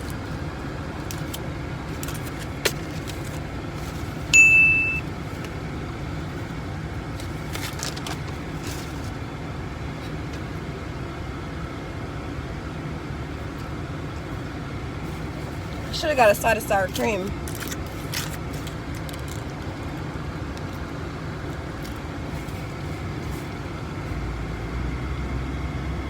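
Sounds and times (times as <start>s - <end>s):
electronic ding: 4.4s - 5.0s.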